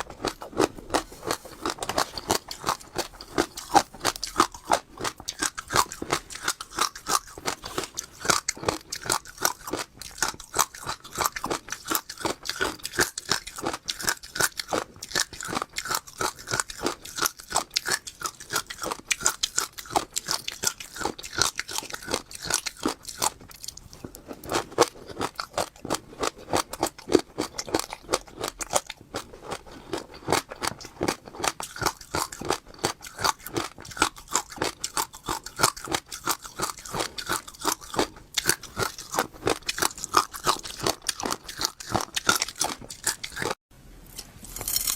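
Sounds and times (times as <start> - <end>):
chewing crunchy seeds: 0.0 - 43.6.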